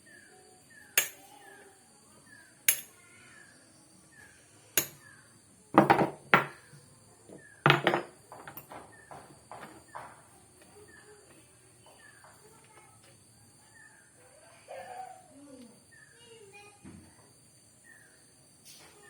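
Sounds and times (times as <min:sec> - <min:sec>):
hard objects clinking and knocking: 0:01.0 - 0:01.3, 0:02.7 - 0:02.9, 0:04.8 - 0:05.0, 0:05.8 - 0:06.7, 0:07.3 - 0:10.2.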